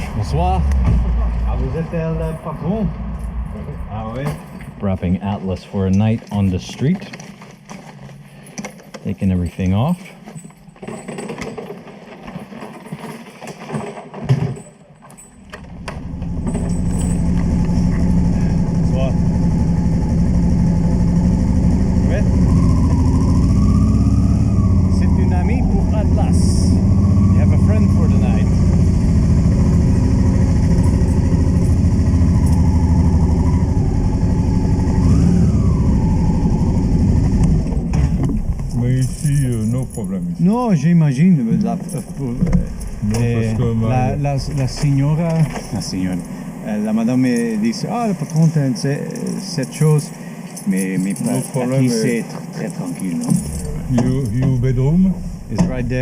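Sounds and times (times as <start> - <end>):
thump: 0.8 - 1.3
luggage being handled: 6.1 - 17.6
faint whine: 15.2 - 56.0
vehicle engine idling: 15.7 - 40.7, 41.8 - 56.0.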